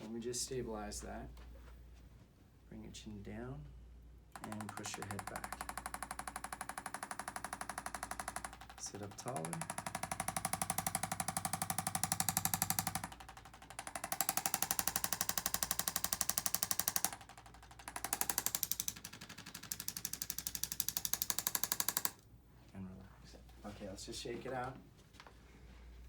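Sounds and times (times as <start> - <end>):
electric percussion rapid tapping: 4.3 - 22.2.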